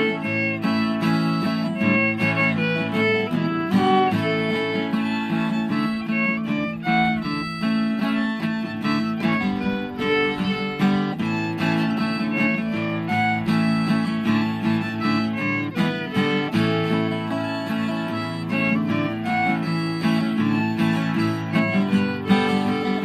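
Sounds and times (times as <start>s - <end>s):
fiddle playing melody: 0.0s - 23.0s
strummed acoustic guitar: 0.0s - 23.0s.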